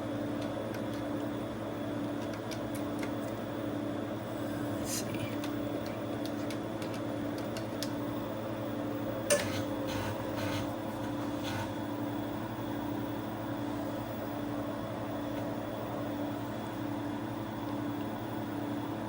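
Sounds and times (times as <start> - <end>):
computer humming: 0.0 - 19.0
disk drive clicks and ticks: 0.2 - 1.3, 2.1 - 3.6, 5.4 - 8.3, 9.2 - 12.8.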